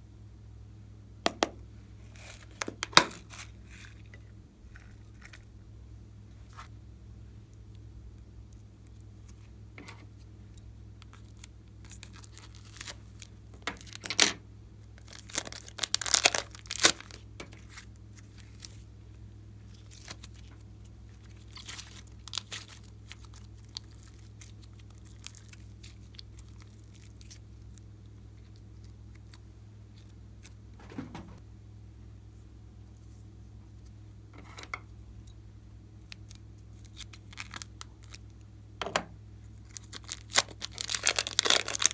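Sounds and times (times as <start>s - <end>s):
steady low hum: 0.0s - 41.9s
slime crackling and popping: 15.0s - 18.8s, 21.2s - 27.9s, 39.6s - 41.9s.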